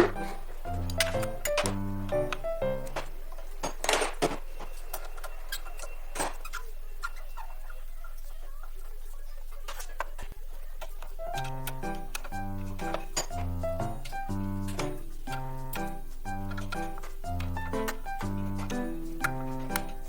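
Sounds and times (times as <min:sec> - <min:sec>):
tools clicking and tapping: 0:00.0 - 0:06.4, 0:10.8 - 0:20.0.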